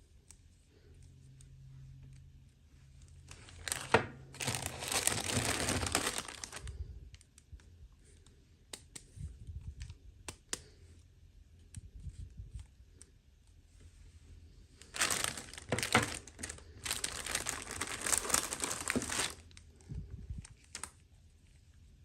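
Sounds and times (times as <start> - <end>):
packaging tearing and crinkling: 3.3 - 6.8, 14.8 - 19.6, 20.5 - 20.9.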